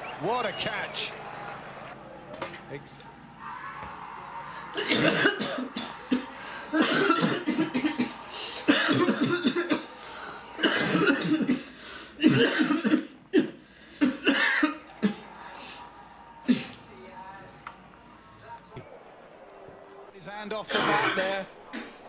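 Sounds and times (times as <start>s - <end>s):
person coughing: 4.8s - 6.2s, 6.8s - 8.1s, 8.7s - 9.9s, 10.6s - 15.2s, 20.7s - 21.9s.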